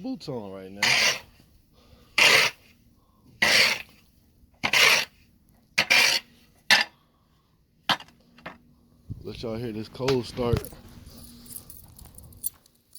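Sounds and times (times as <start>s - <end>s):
shovel scraping snow: 0.7s - 1.4s, 2.2s - 2.8s, 3.4s - 6.9s.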